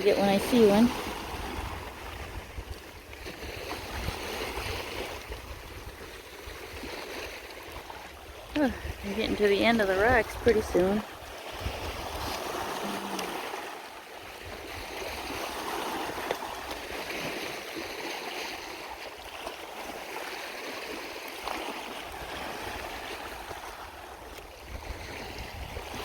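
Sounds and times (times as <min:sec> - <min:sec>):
water rushing over rocks: 0:00.0 - 0:02.1, 0:06.4 - 0:26.0.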